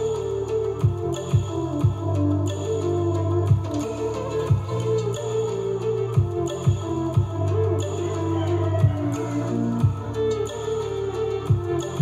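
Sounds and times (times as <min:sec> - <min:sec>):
music with a beat: 0:00.0 - 0:12.0
kick drum hit: 0:03.5 - 0:03.8, 0:04.5 - 0:04.7, 0:06.2 - 0:07.3.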